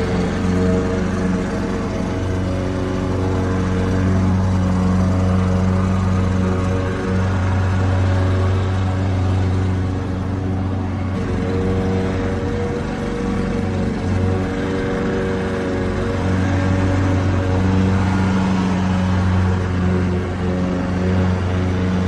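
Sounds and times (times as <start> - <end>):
lawn mower engine droning: 0.0 - 22.0.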